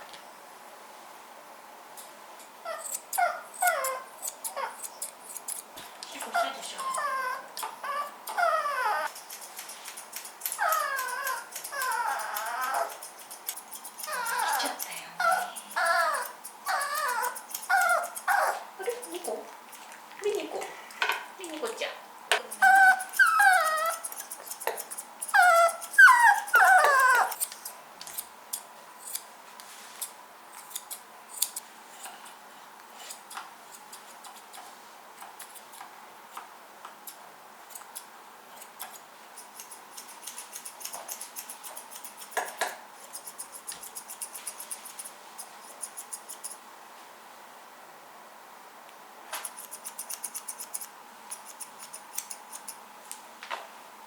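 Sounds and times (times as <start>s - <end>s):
puppy whining: 2.6s - 5.4s, 6.1s - 9.2s, 10.2s - 19.5s, 22.4s - 27.7s
scissors snipping: 9.1s - 19.4s, 22.4s - 29.2s, 30.0s - 32.2s, 33.0s - 34.6s, 35.2s - 35.9s, 37.0s - 46.6s, 49.4s - 53.2s.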